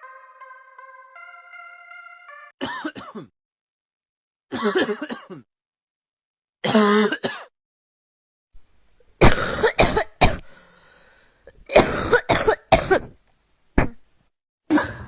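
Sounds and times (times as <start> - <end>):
person coughing: 2.6 - 3.3, 4.5 - 5.5, 6.6 - 7.5, 9.2 - 10.4, 11.7 - 13.2.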